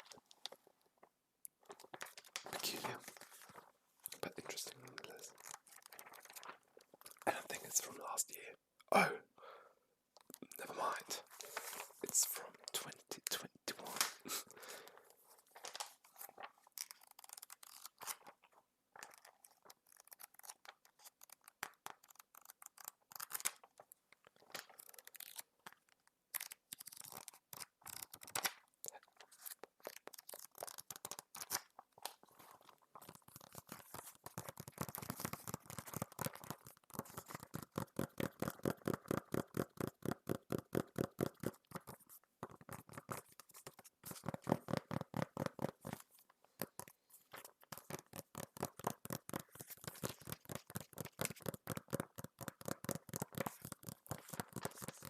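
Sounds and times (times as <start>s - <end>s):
paper rustling and scratching: 1.7s - 7.2s, 11.2s - 12.9s, 15.3s - 40.2s, 40.8s - 55.0s
fast taps on paper: 33.9s - 46.0s, 46.6s - 55.0s.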